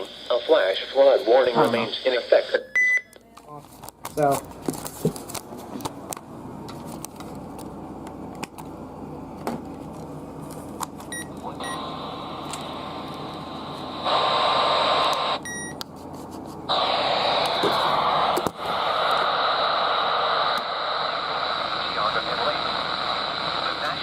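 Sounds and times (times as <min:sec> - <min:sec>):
radio static hiss: 0:00.0 - 0:02.6, 0:11.5 - 0:15.4, 0:16.7 - 0:24.0.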